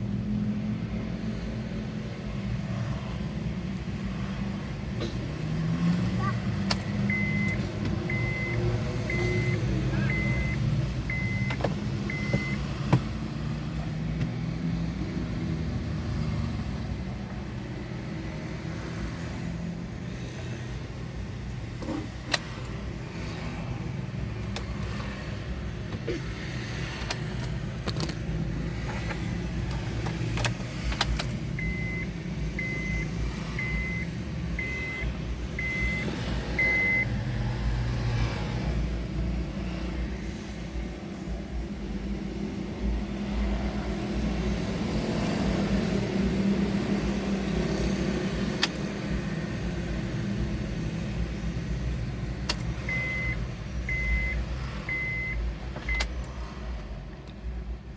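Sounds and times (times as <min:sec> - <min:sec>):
short electronic beeps: 0:07.1 - 0:12.6, 0:31.6 - 0:37.1, 0:52.9 - 0:56.0.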